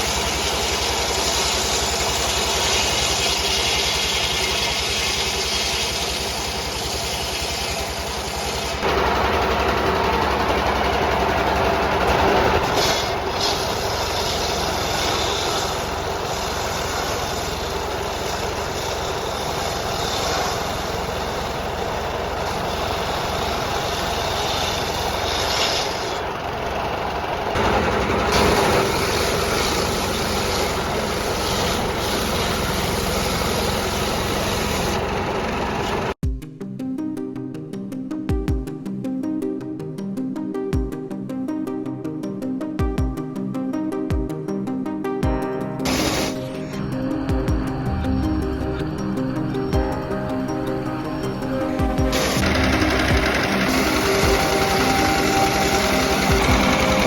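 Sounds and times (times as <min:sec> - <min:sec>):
diesel engine driving saw bench: 0:00.0 - 0:36.2, 0:45.8 - 0:57.0
music: 0:36.2 - 0:57.0.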